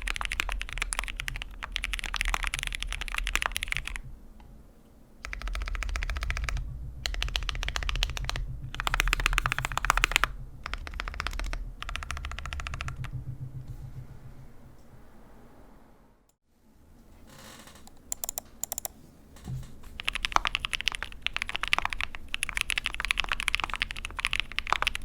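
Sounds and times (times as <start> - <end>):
mechanical keyboard typing: 0.0 - 4.0, 5.2 - 13.2, 17.9 - 19.0, 19.9 - 25.0.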